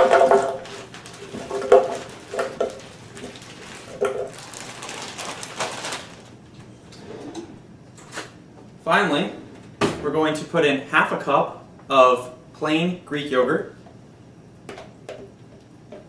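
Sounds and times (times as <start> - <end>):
frozen fruit clattering into container: 0.0 - 6.4.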